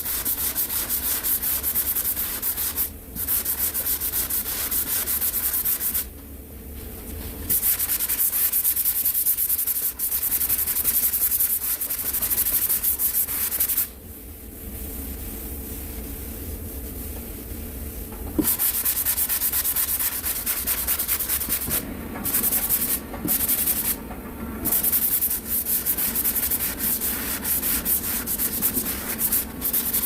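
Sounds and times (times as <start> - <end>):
sandpaper on sanding block: 0.0 - 6.1, 7.5 - 13.9, 18.4 - 24.0, 24.7 - 30.0.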